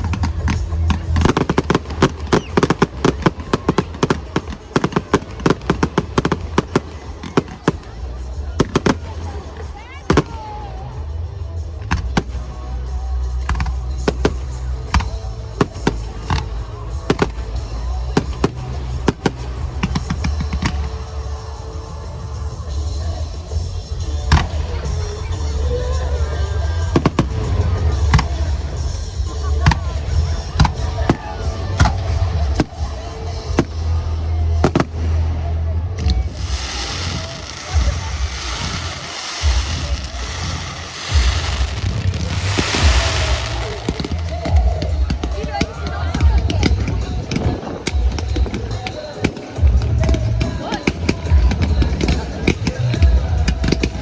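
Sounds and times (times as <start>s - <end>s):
fireworks bangs: 0.0s - 9.4s, 14.0s - 17.5s, 36.1s - 49.4s
loud music with low bass: 0.0s - 54.0s.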